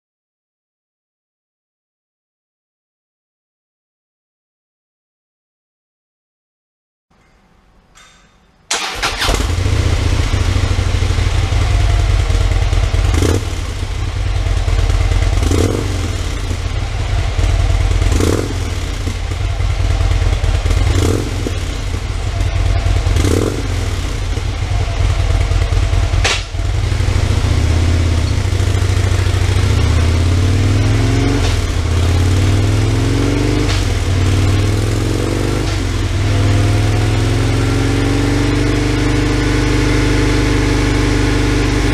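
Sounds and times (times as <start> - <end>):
motorcycle engine starting and running: 8.7 - 41.9.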